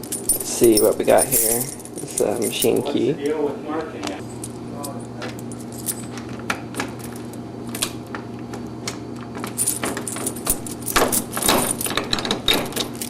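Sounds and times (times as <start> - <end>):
keys jangling in lock: 0.0 - 2.9, 9.5 - 13.0.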